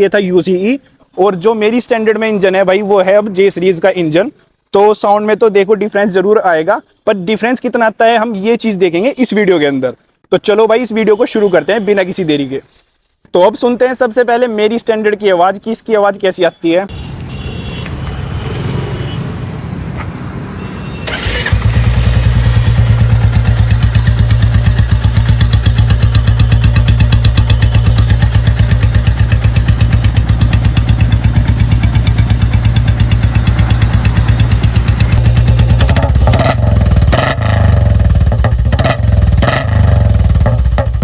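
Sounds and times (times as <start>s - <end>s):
motorcycle throttle blips: 21.0s - 41.0s
motorcycle engine idling: 21.7s - 41.0s.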